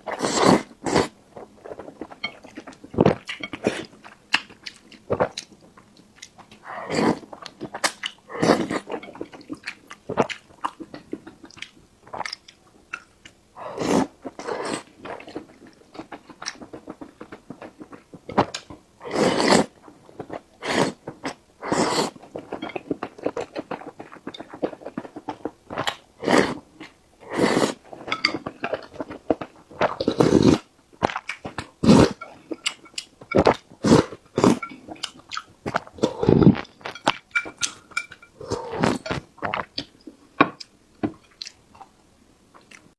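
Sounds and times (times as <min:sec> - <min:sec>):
person chewing and biting: 0:13.8 - 0:39.9.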